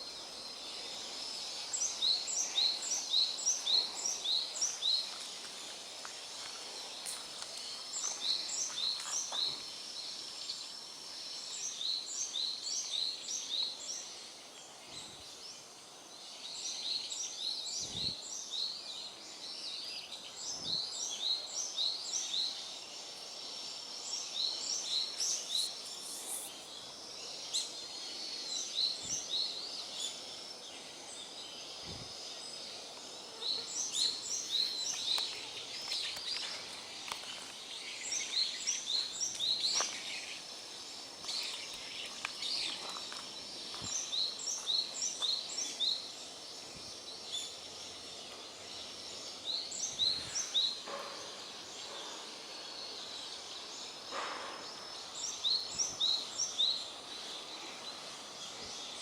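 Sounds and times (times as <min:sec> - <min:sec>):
small birds calling: 0:20.1 - 0:59.0.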